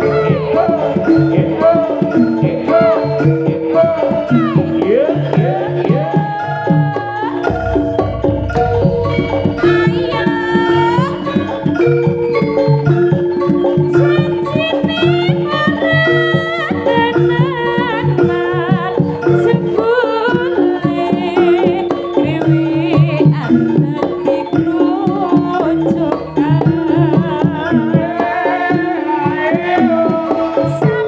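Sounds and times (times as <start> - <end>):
gong-chime percussion: 0.0 - 31.0
hand drums: 0.0 - 31.0
wavering ornamented melody: 0.0 - 31.0
held drone: 7.4 - 19.0.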